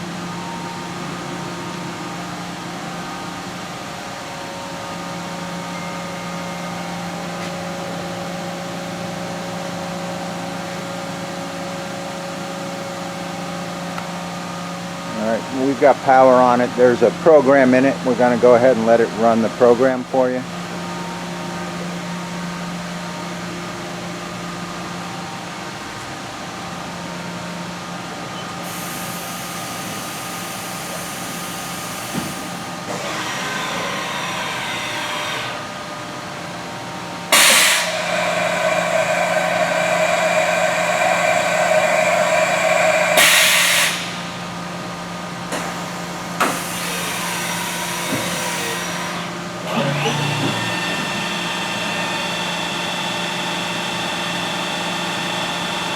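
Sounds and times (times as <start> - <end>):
machine hum with whining tones: 0.0 - 55.9
hissing rush: 37.3 - 44.4.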